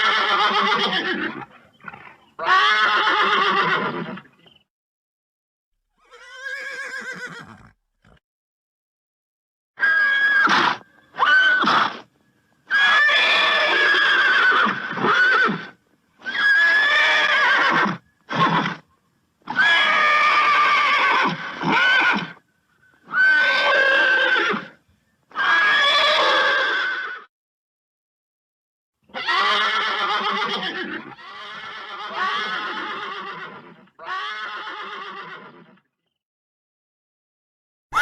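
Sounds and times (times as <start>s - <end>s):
horse neighing: 0.0s - 4.3s, 6.0s - 8.2s, 12.7s - 18.8s, 19.5s - 22.4s, 23.0s - 24.7s, 25.3s - 27.3s, 29.1s - 35.8s.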